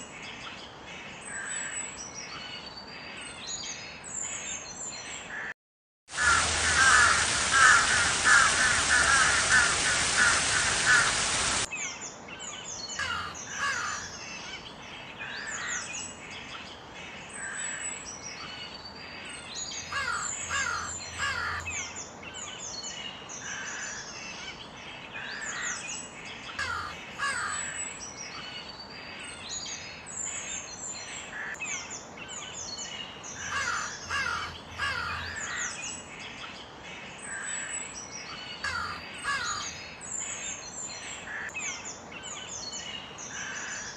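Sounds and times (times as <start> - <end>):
crows cawing: 6.1 - 11.6, 13.0 - 14.1, 19.9 - 21.7, 26.6 - 27.8, 33.4 - 35.8, 38.6 - 39.7
birds chirping: 6.1 - 43.9.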